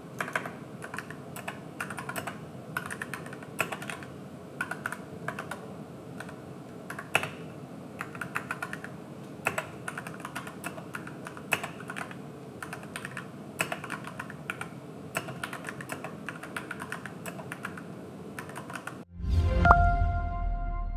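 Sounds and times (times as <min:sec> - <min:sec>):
mechanical keyboard typing: 0:00.2 - 0:19.0
music: 0:19.1 - 0:20.9.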